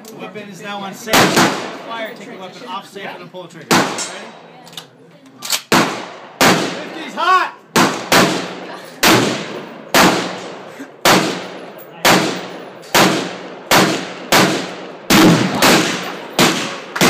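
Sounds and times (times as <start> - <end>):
echoing gunshots: 1.1 - 1.9, 3.7 - 4.2, 5.6 - 7.0, 7.7 - 17.0.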